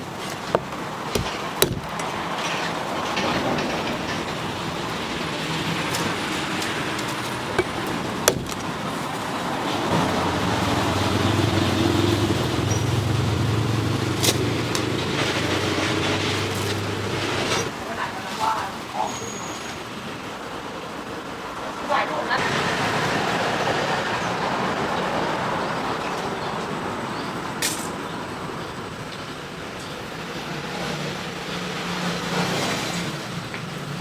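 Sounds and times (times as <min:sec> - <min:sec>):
street traffic: 0:00.0 - 0:34.0
sharp knocks: 0:00.3 - 0:02.3, 0:07.0 - 0:08.9
vehicle engine running: 0:09.9 - 0:17.5.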